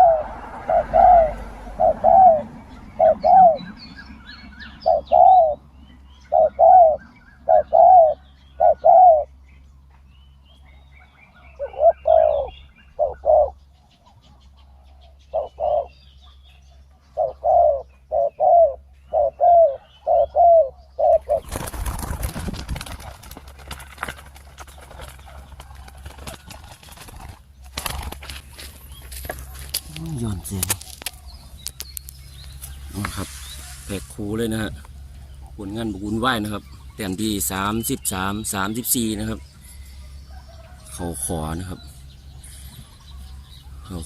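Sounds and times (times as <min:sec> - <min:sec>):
doves cooing: 0:00.0 - 0:09.4, 0:10.5 - 0:44.0
rustling noise: 0:21.4 - 0:34.4
small birds chirping faintly: 0:24.4 - 0:44.0.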